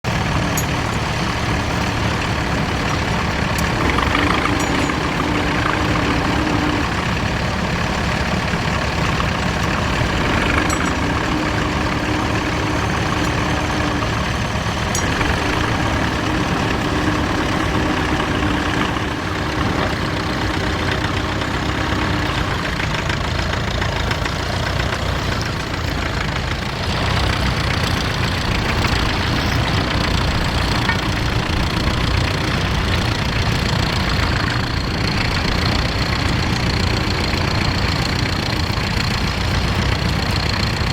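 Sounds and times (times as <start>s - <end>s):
tractor engine rumbling: 0.0s - 40.9s
faint steady drone: 0.1s - 23.0s.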